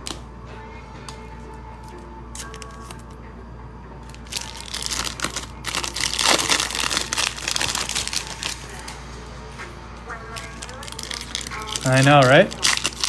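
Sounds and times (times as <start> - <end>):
wrapper crinkling and tearing: 4.1 - 9.0, 10.3 - 13.0.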